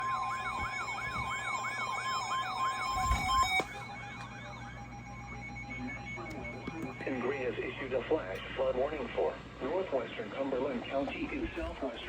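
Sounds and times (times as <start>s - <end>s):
rising siren wail: 0.0s - 7.0s
steady high alarm tone: 0.0s - 8.3s.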